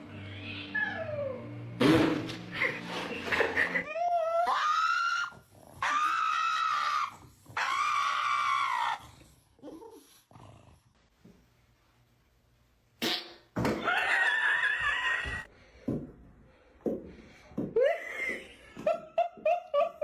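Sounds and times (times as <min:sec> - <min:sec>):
animal screaming: 0:04.0 - 0:09.0.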